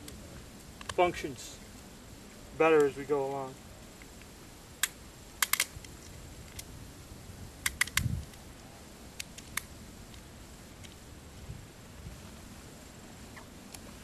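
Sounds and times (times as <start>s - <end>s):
pistol metallic clicks: 4.8s - 5.8s, 7.6s - 8.1s.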